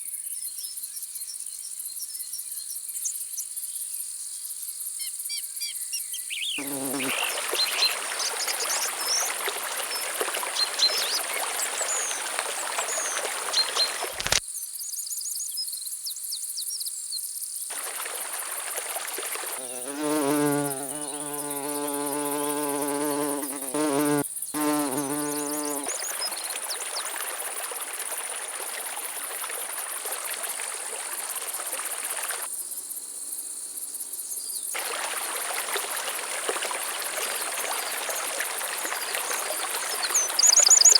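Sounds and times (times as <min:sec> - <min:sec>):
high-pitched insect trill: 0:06.6 - 0:08.7, 0:17.7 - 0:28.3
flying insect buzzing: 0:06.6 - 0:14.4, 0:17.7 - 0:29.5.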